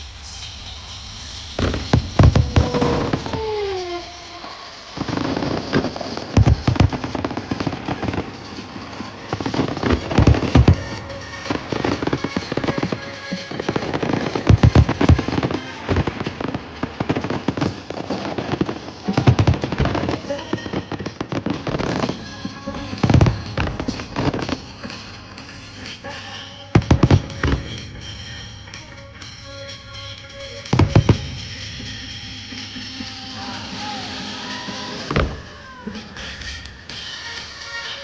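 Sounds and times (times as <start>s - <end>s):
fireworks crackling and popping: 0.0s - 38.0s
music: 0.0s - 38.0s
firework shells booming: 1.4s - 26.1s, 26.8s - 36.9s.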